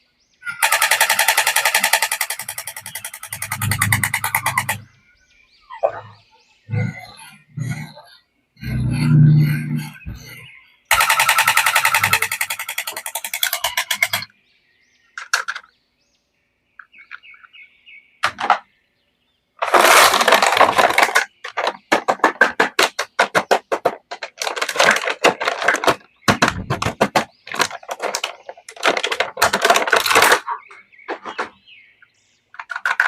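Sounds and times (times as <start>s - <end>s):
plastic packaging crackling: 19.6s - 21.9s, 24.1s - 30.3s.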